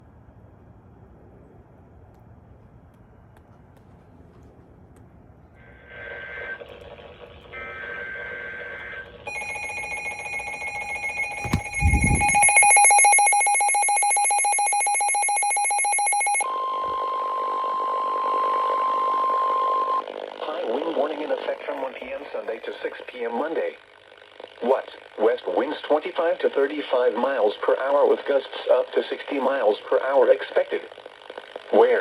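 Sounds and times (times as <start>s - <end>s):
steady tone: 9.4s - 13.6s
warbling data bursts: 10.8s - 13.5s
harsh alert tone: 10.8s - 13.8s
dull low thud: 11.4s - 12.5s.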